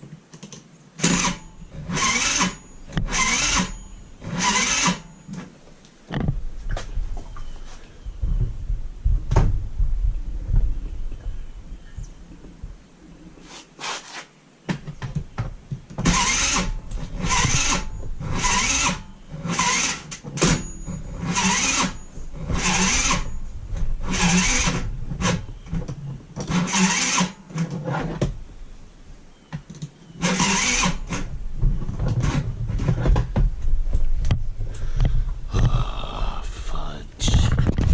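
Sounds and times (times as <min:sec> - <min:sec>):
scooter engine cranking: 0:01.0 - 0:05.4, 0:16.0 - 0:28.2, 0:30.2 - 0:33.3
person speaking: 0:35.5 - 0:37.7.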